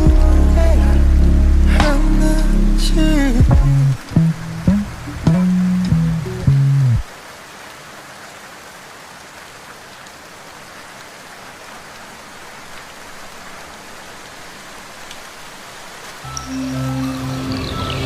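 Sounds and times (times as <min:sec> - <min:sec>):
music: 0:00.0 - 0:07.0, 0:16.3 - 0:18.0
steady rain falling: 0:00.0 - 0:18.0.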